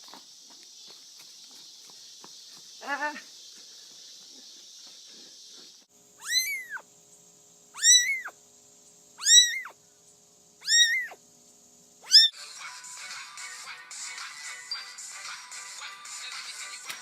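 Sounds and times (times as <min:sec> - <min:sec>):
cat meowing: 0:06.2 - 0:06.8, 0:07.8 - 0:08.3, 0:09.2 - 0:09.8, 0:10.6 - 0:11.2, 0:12.0 - 0:12.4.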